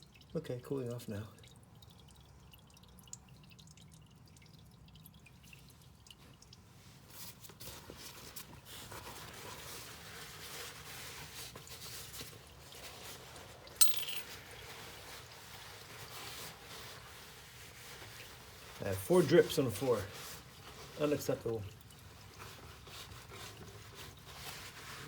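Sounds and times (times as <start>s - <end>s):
oil dripping into metal pan: 0.0s - 6.7s
sharp clink: 13.8s - 14.4s.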